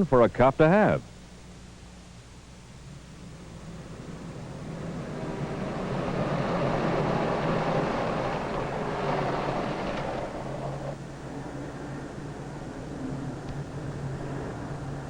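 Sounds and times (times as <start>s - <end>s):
motor vehicle passing: 2.8s - 15.0s.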